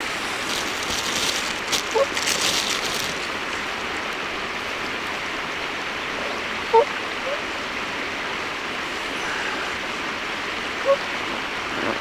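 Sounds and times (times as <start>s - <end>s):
crackling: 0.0s - 4.2s
swan honking: 1.9s - 2.2s, 10.7s - 12.0s.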